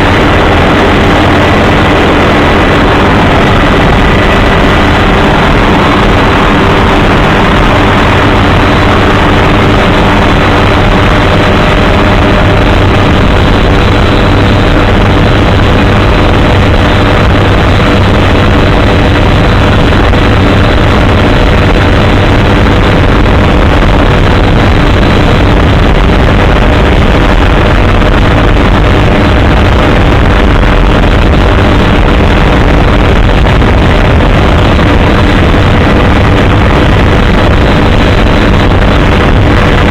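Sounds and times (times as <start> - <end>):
constant humming tones: 0.0 - 39.9
helicopter rotor and engine: 0.0 - 39.9.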